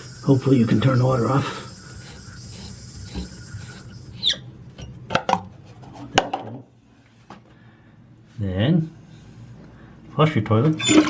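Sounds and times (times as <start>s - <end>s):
water hissing through toilet valve: 0.0s - 4.6s, 10.8s - 11.0s
valve squeak: 0.0s - 4.9s, 10.8s - 11.0s.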